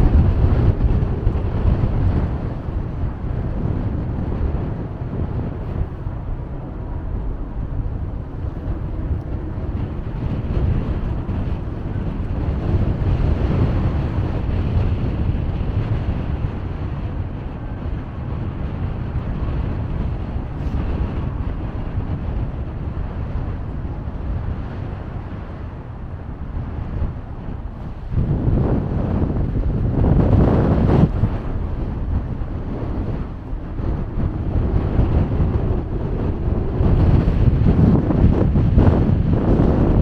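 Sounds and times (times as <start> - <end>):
blizzard wind buffeting microphone: 0.0 - 40.0.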